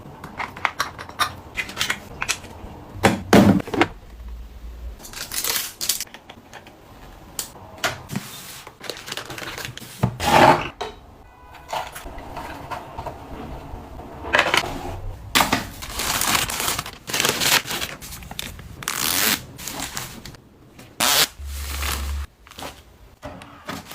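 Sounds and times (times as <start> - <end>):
plastic packaging crinkling: 15.8 - 20.4.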